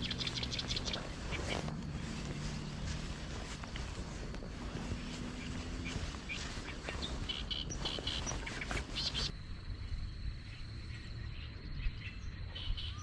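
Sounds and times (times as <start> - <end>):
small birds chirping: 0.0 - 9.4
low rumble: 0.0 - 12.3.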